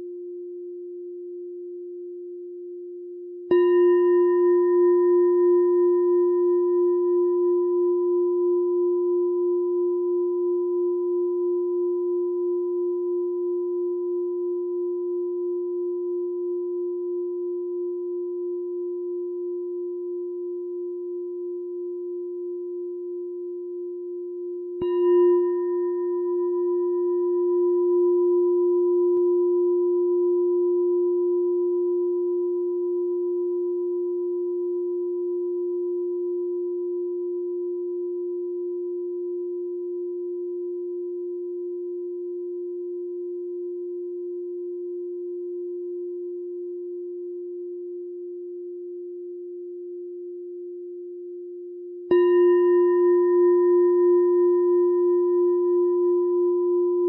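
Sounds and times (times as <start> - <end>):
meditation bell ringing: 3.5 - 50.6, 52.1 - 57.0.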